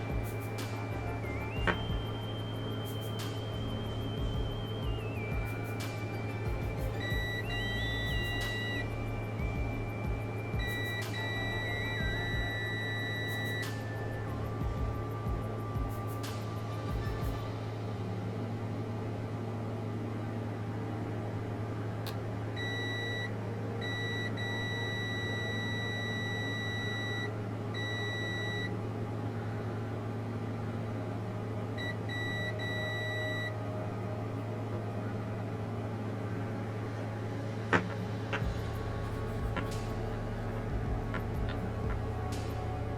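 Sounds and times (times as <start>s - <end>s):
high electronic beep: 0.0s - 17.6s, 22.6s - 28.7s, 31.8s - 33.6s
electrical hum: 0.0s - 42.9s.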